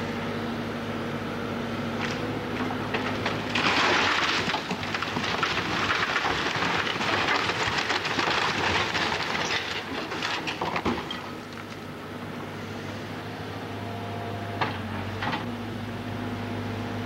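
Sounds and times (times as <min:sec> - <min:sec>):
splintering wood crackling: 0:02.9 - 0:11.9.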